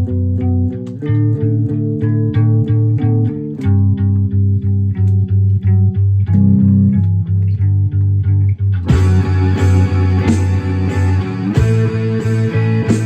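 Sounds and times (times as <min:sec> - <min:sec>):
bass guitar riff: 0:00.0 - 0:13.0
loud distorted rock band: 0:08.9 - 0:13.0.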